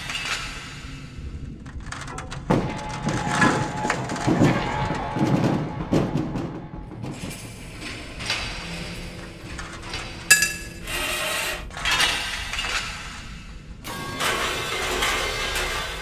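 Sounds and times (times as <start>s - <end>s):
light clinks and knocks: 10.3s - 11.0s.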